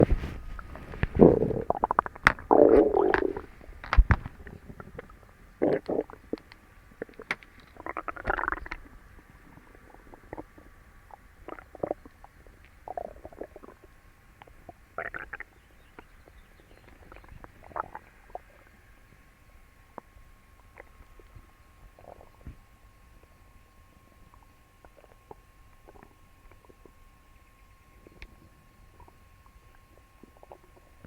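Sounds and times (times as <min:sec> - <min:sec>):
stomach gurgling: 0:00.0 - 0:19.0, 0:19.8 - 0:31.0.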